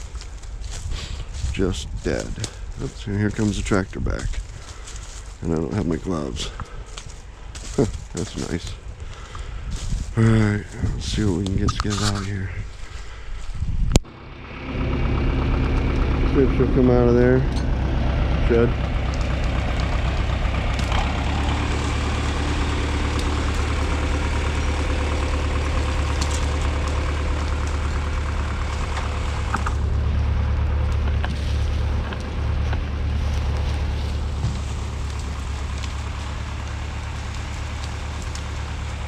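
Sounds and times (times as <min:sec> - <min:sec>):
tractor engine droning: 0:00.0 - 0:39.0.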